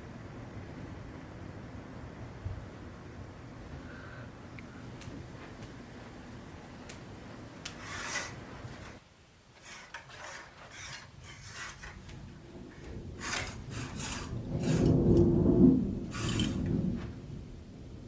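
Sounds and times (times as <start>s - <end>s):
scraping against hard surface: 7.7s - 9.0s, 9.6s - 15.3s, 16.1s - 17.1s.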